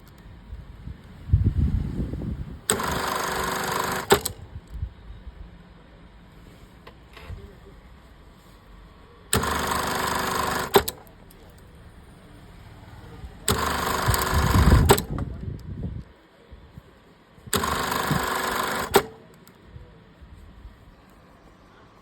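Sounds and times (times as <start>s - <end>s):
sewing machine click: 2.7s - 4.4s, 9.3s - 11.6s, 13.5s - 15.2s, 17.5s - 19.4s
sewing machine stitching: 2.7s - 4.4s, 9.3s - 11.1s, 13.4s - 15.2s, 17.5s - 19.2s.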